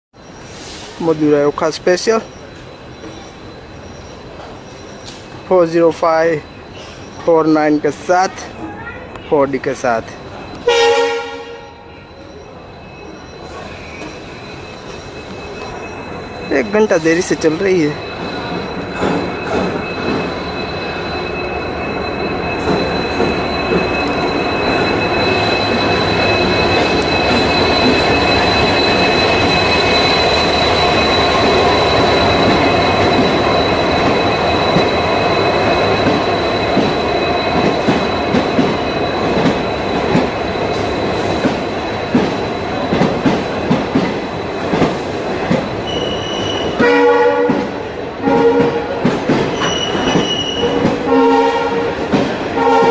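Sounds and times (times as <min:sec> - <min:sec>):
train coaches rumbling: 0:00.2 - 0:52.9
high-pitched wheel squeal: 0:10.3 - 0:47.2, 0:49.4 - 0:51.7
train horn blast: 0:10.6 - 0:11.9, 0:46.8 - 0:49.0, 0:51.0 - 0:52.9.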